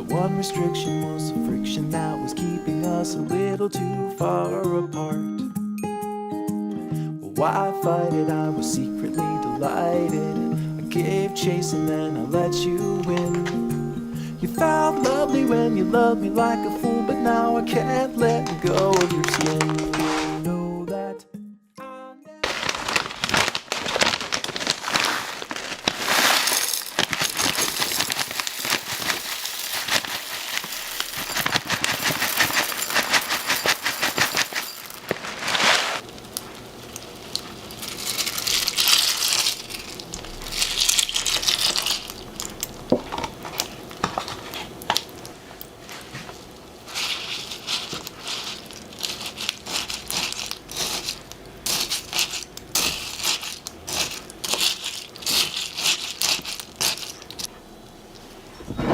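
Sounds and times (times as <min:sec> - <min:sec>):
rustling crackling noise: 0:17.2 - 0:20.6, 0:22.4 - 0:57.6.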